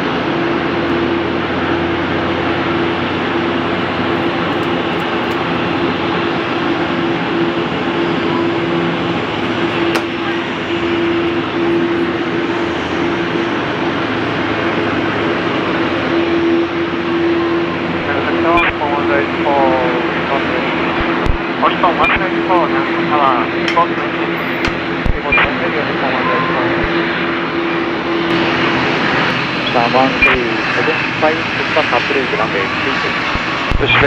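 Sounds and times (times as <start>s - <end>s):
airliner engines running: 0.0s - 34.0s.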